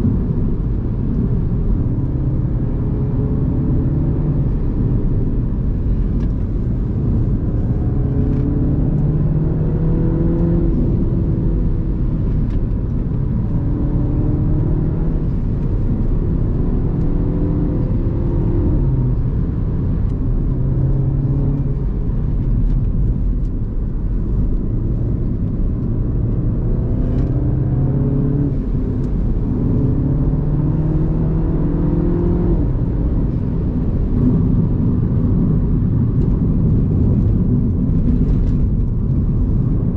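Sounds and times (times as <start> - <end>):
car engine accelerating: 0.0 - 39.9
road and tyre noise: 0.0 - 39.9.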